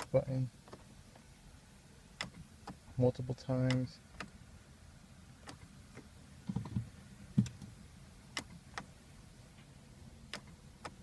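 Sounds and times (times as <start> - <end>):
clicks in car cabin: 2.2 - 2.8, 3.5 - 4.4, 5.4 - 8.9, 10.3 - 11.0.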